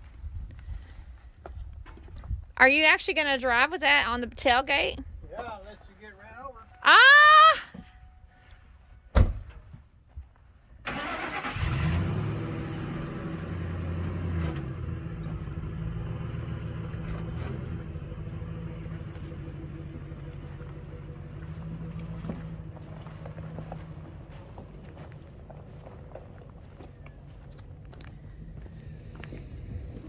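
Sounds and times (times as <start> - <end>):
sharp thump: 9.2 - 9.6
truck engine starting and running: 10.8 - 30.0.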